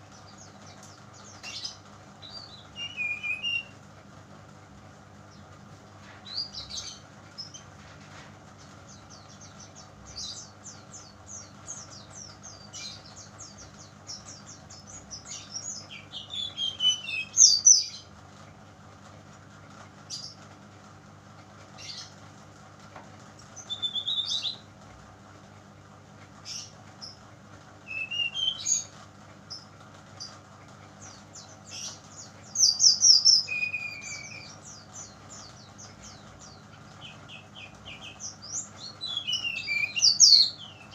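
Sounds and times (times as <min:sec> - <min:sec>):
bird chirps and trills: 0:00.0 - 0:03.8, 0:06.2 - 0:07.7, 0:08.6 - 0:18.1, 0:21.8 - 0:22.2, 0:23.5 - 0:24.7, 0:26.4 - 0:40.9
steady low hum: 0:00.0 - 0:40.9.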